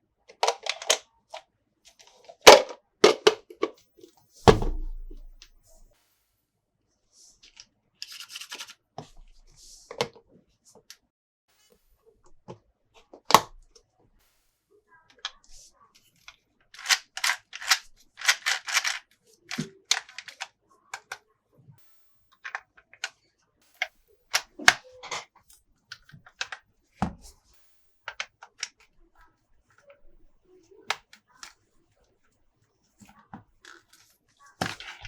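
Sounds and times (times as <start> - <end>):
plastic parts rattling: 0.3 - 1.0, 2.0 - 3.8, 16.8 - 21.1.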